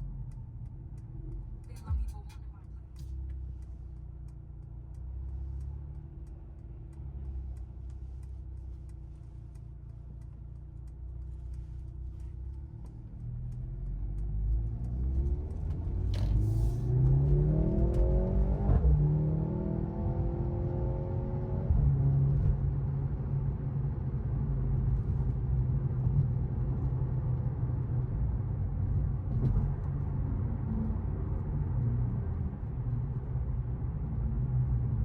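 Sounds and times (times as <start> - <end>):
car engine accelerating: 0.0 - 35.0.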